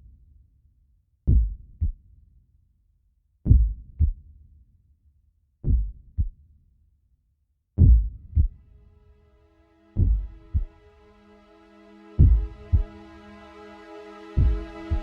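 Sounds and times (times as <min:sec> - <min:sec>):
deep heartbeat-like thumps: 0:01.3 - 0:02.0, 0:03.5 - 0:04.2, 0:05.6 - 0:06.4, 0:07.8 - 0:08.6, 0:10.0 - 0:10.7, 0:12.2 - 0:12.9, 0:14.4 - 0:15.0.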